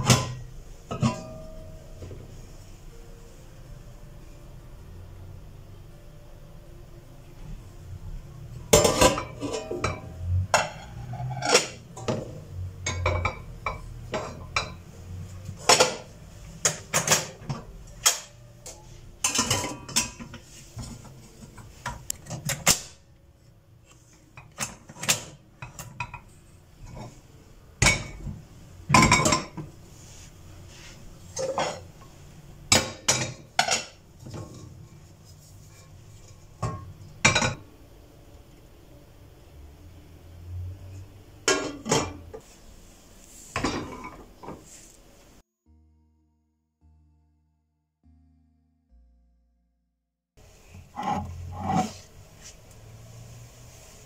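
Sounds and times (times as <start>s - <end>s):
dishes and cutlery clinking: 0.0s - 2.1s, 8.7s - 22.9s, 24.4s - 27.2s, 27.8s - 29.7s, 31.3s - 31.9s, 41.4s - 42.4s, 43.5s - 44.8s.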